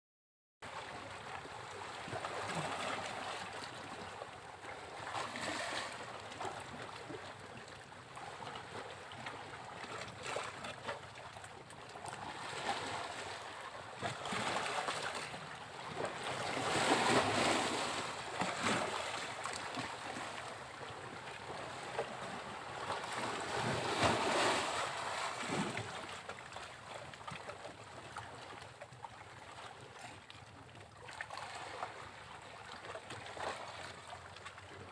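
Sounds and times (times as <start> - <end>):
sea waves breaking on beach: 0.7 - 7.2, 12.0 - 26.4.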